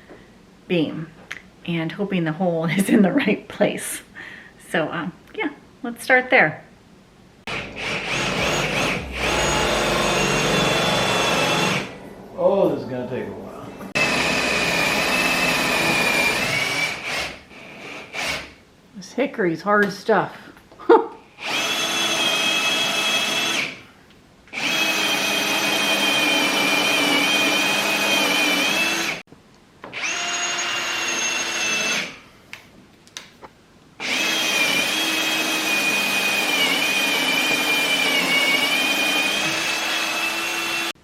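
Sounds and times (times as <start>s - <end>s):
electric drill boring into wood: 7.5s - 12.0s, 14.0s - 18.6s, 21.4s - 23.8s, 24.5s - 29.2s, 29.9s - 32.2s, 34.0s - 41.0s.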